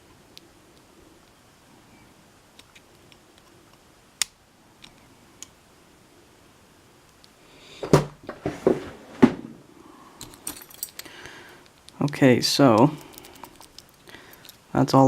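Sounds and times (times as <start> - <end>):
lock parts clicking: 10.2 - 11.1, 11.7 - 14.6.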